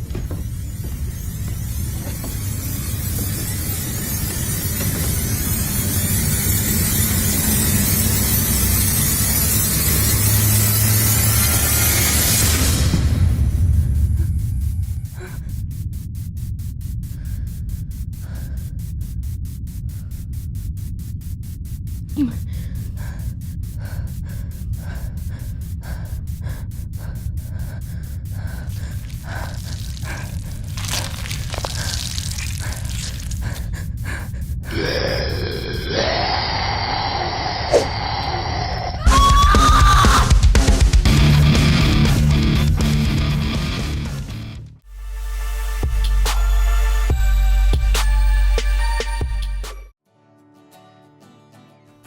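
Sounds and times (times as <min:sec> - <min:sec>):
low hum: 0:00.0 - 0:39.2
background music with bass: 0:39.1 - 0:49.9.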